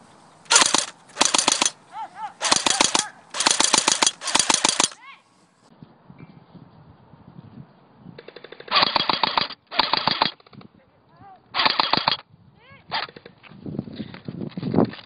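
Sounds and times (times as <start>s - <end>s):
airsoft guns firing bursts: 0.5s - 1.8s, 2.4s - 5.0s, 8.4s - 10.3s, 11.6s - 12.2s.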